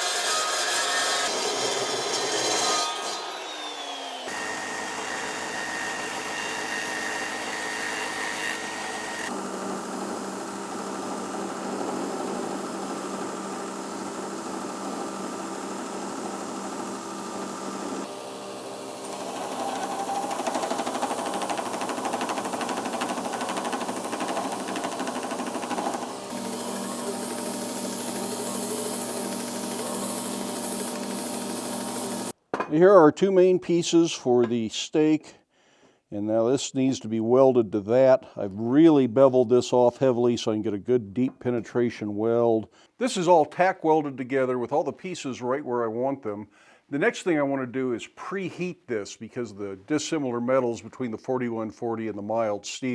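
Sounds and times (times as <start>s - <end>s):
electric grinder grinding steel: 0.0s - 32.4s.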